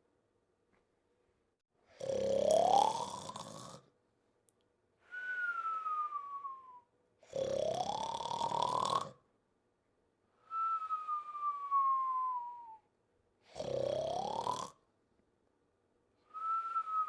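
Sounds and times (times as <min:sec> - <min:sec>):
rasping snore: 0:01.9 - 0:03.9, 0:07.2 - 0:09.2, 0:13.5 - 0:14.8
whistle on out-breath: 0:05.0 - 0:06.9, 0:10.4 - 0:12.9, 0:16.2 - 0:17.0.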